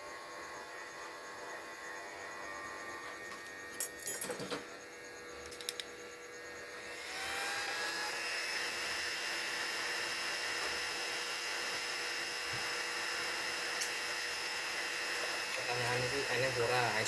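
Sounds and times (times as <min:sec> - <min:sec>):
hot-air station fan hissing: 0:04.4 - 0:17.0.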